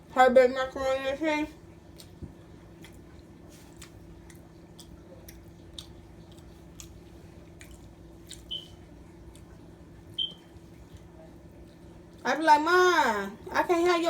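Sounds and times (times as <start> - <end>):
chewing food with wet mouth clicks: 1.7 - 12.2.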